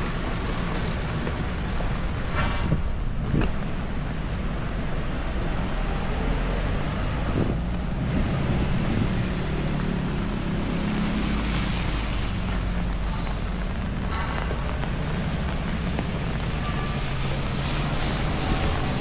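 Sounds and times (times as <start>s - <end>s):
heavy rain hissing: 8.0s - 19.0s.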